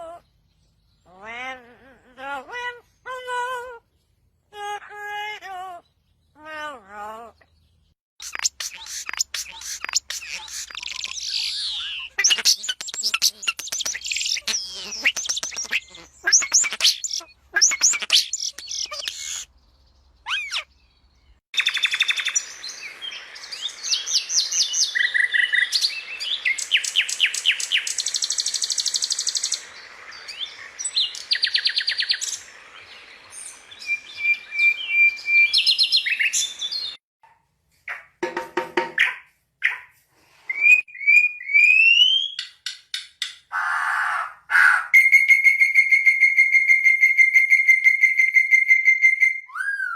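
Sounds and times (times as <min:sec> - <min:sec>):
bird-like chirps and trills: 0:05.7 - 0:37.0.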